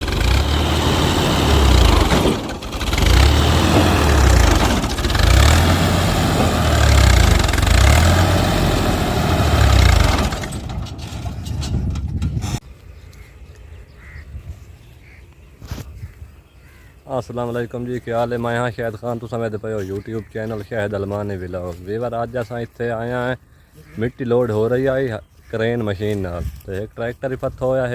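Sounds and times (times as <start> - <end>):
heavy diesel engine running: 0.0 - 12.4
faint outdoor sounds: 10.6 - 27.9.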